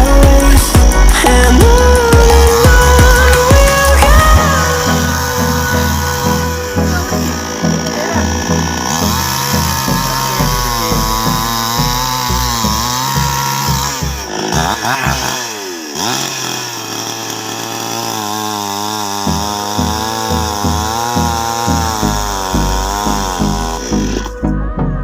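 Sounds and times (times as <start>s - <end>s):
chainsaw cutting wood: 0.0s - 25.0s.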